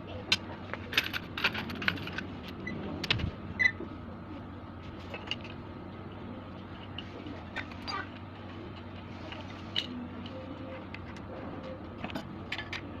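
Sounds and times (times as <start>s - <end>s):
metal parts clicking and clinking: 0.3s - 3.2s, 5.0s - 5.6s, 12.0s - 12.9s.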